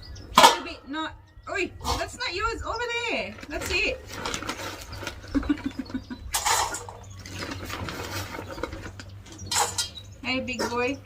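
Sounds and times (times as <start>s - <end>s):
dogs chewing or lapping: 6.4s - 9.7s.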